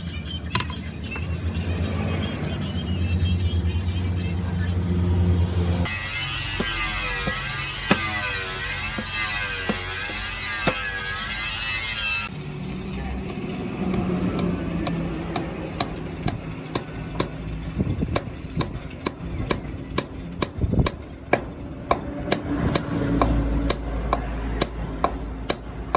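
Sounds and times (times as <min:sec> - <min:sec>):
hammer striking steel on anvil: 0:05.9 - 0:11.6, 0:13.2 - 0:17.4, 0:18.1 - 0:25.7.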